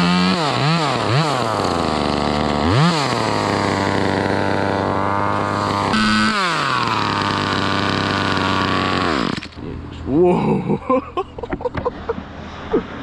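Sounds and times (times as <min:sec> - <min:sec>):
chainsaw engine revving: 0:00.0 - 0:09.7.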